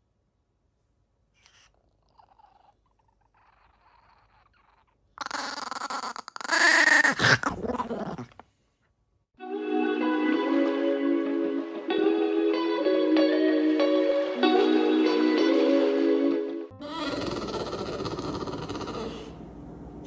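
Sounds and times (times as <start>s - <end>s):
dog vocalizing loudly: 1.5s - 8.4s, 16.8s - 19.3s.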